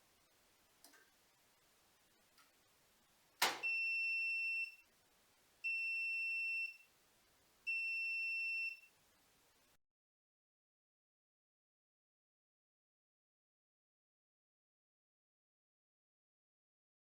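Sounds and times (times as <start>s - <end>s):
sharp click: 3.4s - 3.7s
washing machine beeps: 3.4s - 4.8s, 5.6s - 6.9s, 7.7s - 8.9s.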